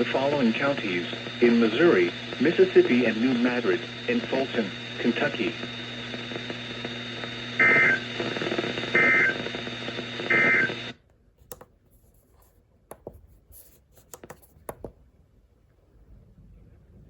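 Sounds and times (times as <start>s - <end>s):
hissy humming radio background: 0.0s - 11.0s.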